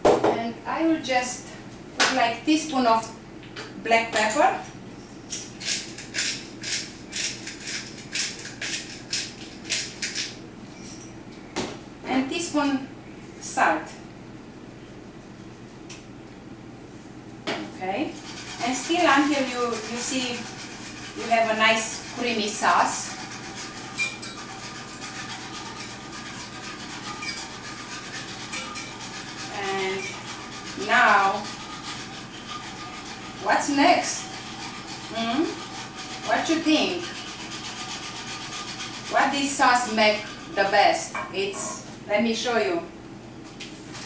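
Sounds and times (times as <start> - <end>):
steady low hum: 0.0 - 43.4
whisk scraping in a skillet: 18.1 - 42.0.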